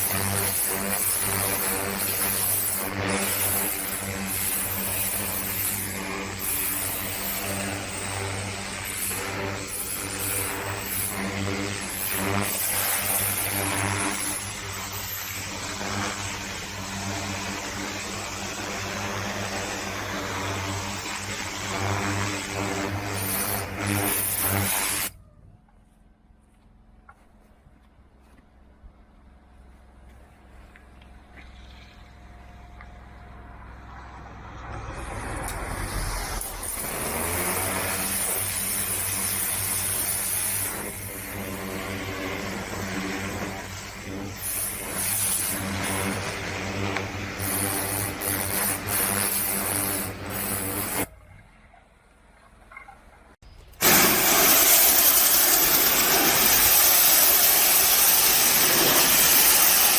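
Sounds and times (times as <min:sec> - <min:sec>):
high-pressure water spray hiss: 0:00.0 - 0:25.1, 0:35.4 - 0:51.1, 0:53.8 - 0:59.9
pressure washer engine drone: 0:00.0 - 0:25.1, 0:31.0 - 0:51.1, 0:53.5 - 0:59.9.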